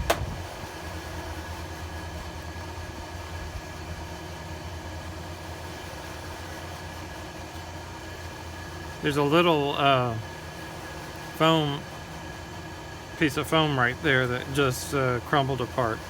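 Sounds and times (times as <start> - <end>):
fan droning: 0.0 - 16.0.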